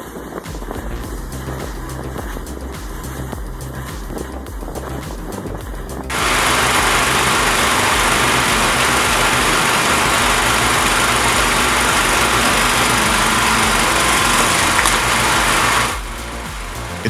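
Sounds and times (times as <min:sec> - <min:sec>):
wood chipper running: 0:06.1 - 0:16.0.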